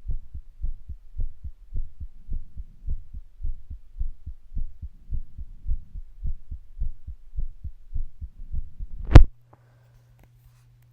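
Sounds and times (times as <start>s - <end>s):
heartbeat double thuds: 0.0s - 9.3s.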